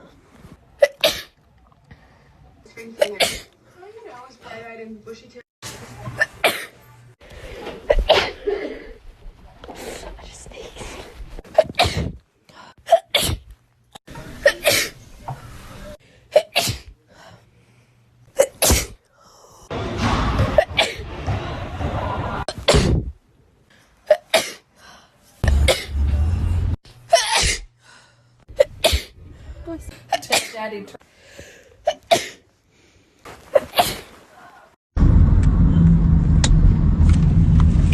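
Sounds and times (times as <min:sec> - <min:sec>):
young woman sneezing: 0:14.4 - 0:14.9, 0:18.4 - 0:19.0, 0:27.2 - 0:27.7.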